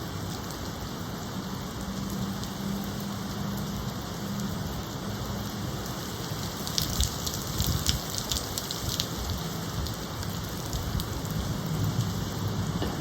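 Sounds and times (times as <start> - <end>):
steady rain hiss: 0.0 - 13.0
sharp rain drop ticks: 5.4 - 12.9
gusting wind: 5.7 - 13.0.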